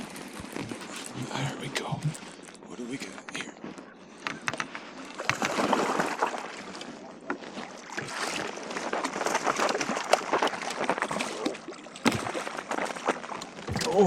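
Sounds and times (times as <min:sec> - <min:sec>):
water splashing beside kayak: 0:00.0 - 0:14.0
fish thrashing at surface: 0:05.2 - 0:07.0, 0:07.6 - 0:14.0.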